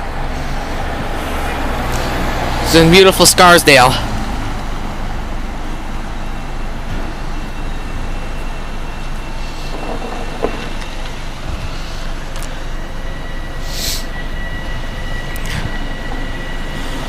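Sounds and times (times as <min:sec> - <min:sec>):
electric train rumble: 0:00.0 - 0:17.0
faint high whine: 0:02.7 - 0:17.0.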